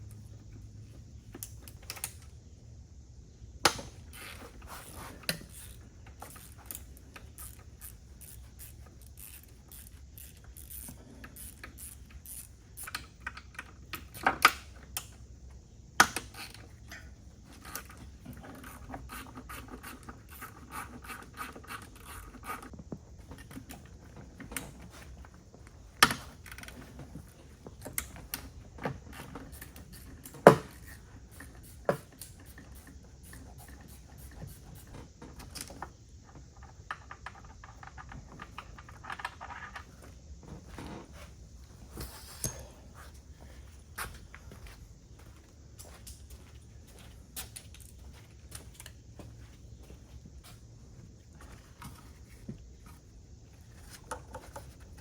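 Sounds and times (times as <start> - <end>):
socket ratchet clicking: 5.3 - 15.1.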